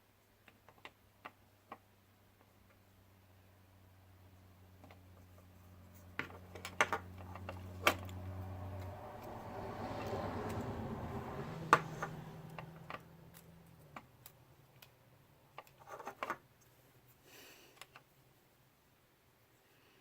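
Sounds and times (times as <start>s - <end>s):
small parts and tools clicking: 4.8s - 10.9s, 11.5s - 16.8s, 17.7s - 18.1s.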